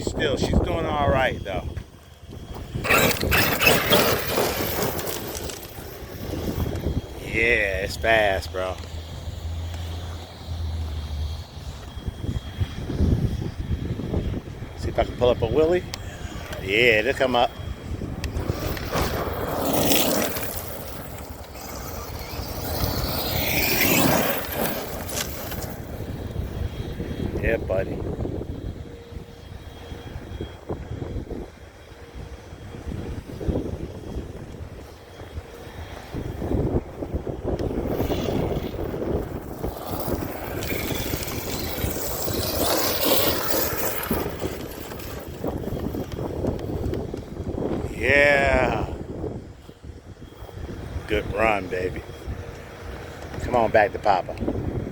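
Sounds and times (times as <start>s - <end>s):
wind on microphone: 0.0s - 54.9s
electric motor whining: 0.5s - 48.0s
tyre and drivetrain noise: 1.4s - 15.2s, 15.8s - 48.0s, 49.6s - 54.9s
tyres scrabbling over dirt: 2.4s - 9.0s, 18.2s - 26.4s, 37.7s - 47.3s.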